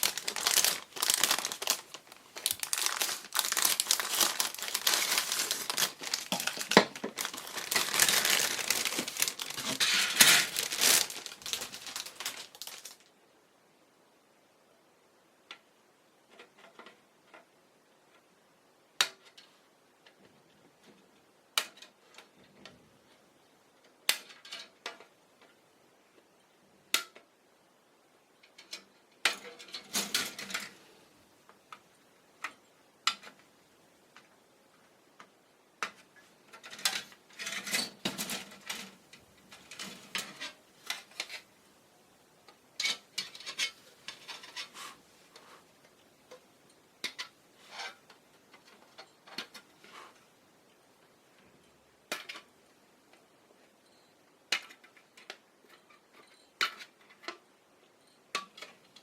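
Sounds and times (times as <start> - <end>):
plastic parts clicking and clattering: 0.0 - 13.1, 16.3 - 17.5, 19.0 - 25.6, 28.4 - 30.8, 35.2 - 41.5, 42.4 - 50.3, 52.1 - 53.2, 54.5 - 57.5, 58.3 - 59.0.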